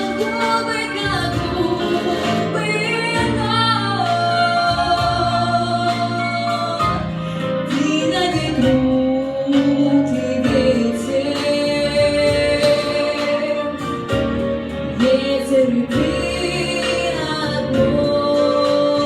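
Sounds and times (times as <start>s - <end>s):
jazz instrumental accompaniment: 0.0s - 19.0s
woman singing: 0.0s - 19.0s.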